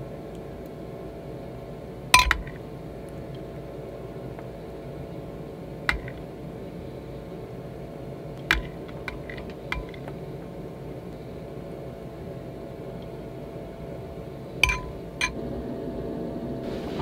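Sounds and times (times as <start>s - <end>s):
low appliance hum: 0.0s - 17.0s
dishes clinking: 2.2s - 2.6s, 8.5s - 10.1s, 14.6s - 15.4s.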